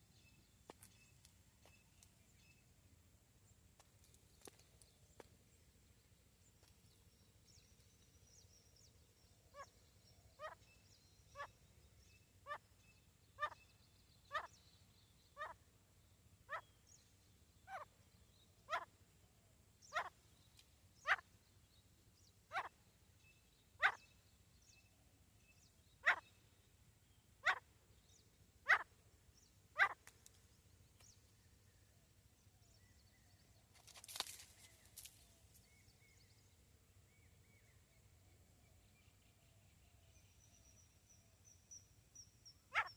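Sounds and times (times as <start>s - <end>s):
francolin calling: 13.4s - 13.7s, 14.3s - 14.6s, 23.8s - 24.1s, 26.0s - 26.3s, 42.5s - 42.9s
brief rustle: 33.7s - 35.3s.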